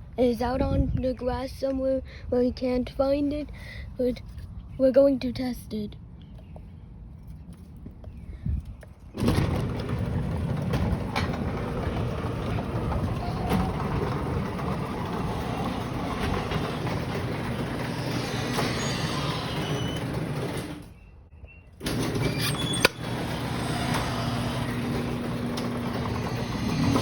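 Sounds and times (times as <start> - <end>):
garage door opener running: 9.2 - 21.0, 21.8 - 27.0
faint clicks from garage door: 21.8 - 27.0.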